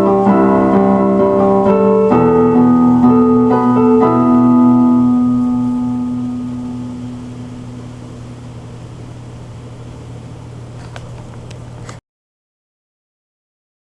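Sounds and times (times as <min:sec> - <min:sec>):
piano chord ringing: 0:00.0 - 0:09.5
faint steady hum: 0:00.0 - 0:12.0.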